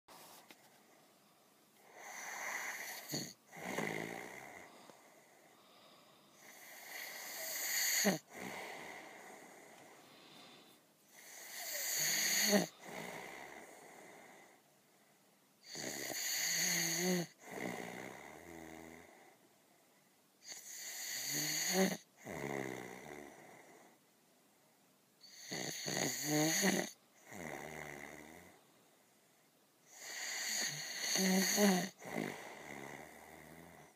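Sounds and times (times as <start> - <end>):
heavy rasping snores: 1.8 - 4.8, 6.4 - 9.8, 11.1 - 14.5, 15.6 - 19.2, 20.4 - 23.9, 25.2 - 28.6, 29.9 - 33.9
soft breath out: 4.6 - 6.7, 8.2 - 10.9.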